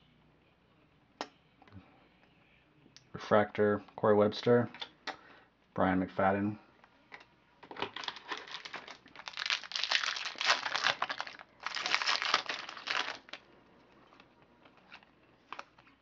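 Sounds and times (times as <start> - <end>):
plastic wrapper crinkling: 7.8 - 13.5.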